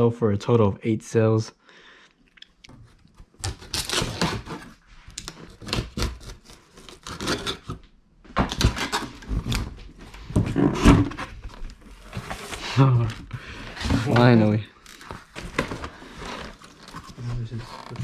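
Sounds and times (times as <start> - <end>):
cardboard box being torn open: 3.4 - 4.8, 5.4 - 7.8.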